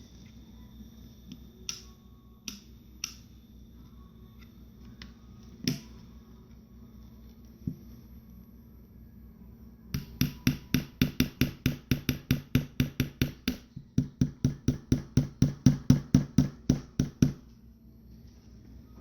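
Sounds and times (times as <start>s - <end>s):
small hammer tapping metal: 10.0s - 17.4s.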